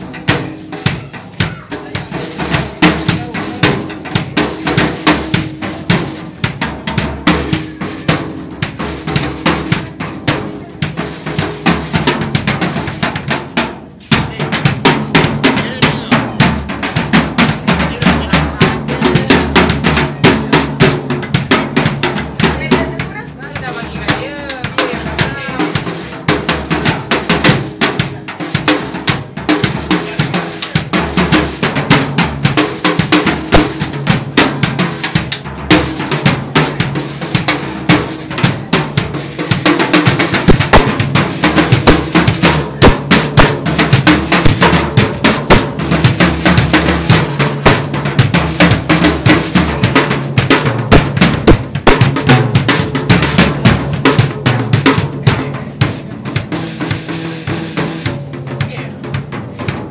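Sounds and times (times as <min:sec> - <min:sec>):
drum kit playing: 0:00.0 - 0:59.9.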